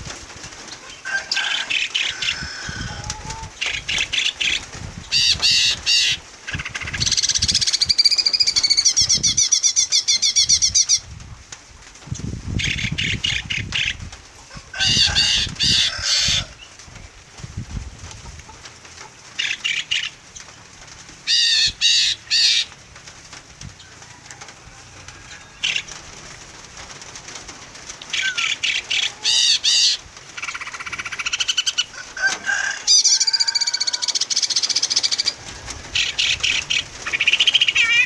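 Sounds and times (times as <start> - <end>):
rustles: 0.0 - 38.0
songbirds calling and singing: 0.7 - 11.1, 12.2 - 14.1, 19.4 - 20.6, 21.3 - 22.8, 25.3 - 26.1, 28.1 - 31.9, 32.9 - 38.0
rapid chattering bird notes: 19.4 - 20.3, 28.1 - 31.9, 33.9 - 38.0.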